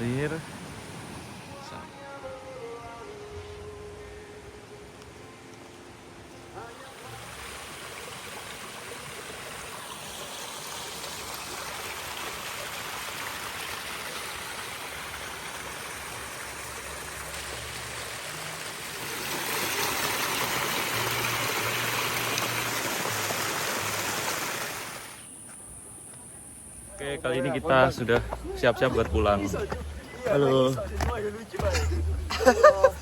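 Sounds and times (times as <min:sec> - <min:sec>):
small waterfall splashing: 0:06.6 - 0:25.2.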